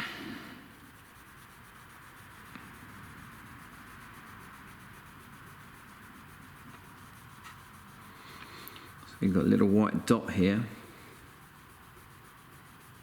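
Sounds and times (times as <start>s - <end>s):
cloth rubbing car paintwork: 0.0s - 13.0s.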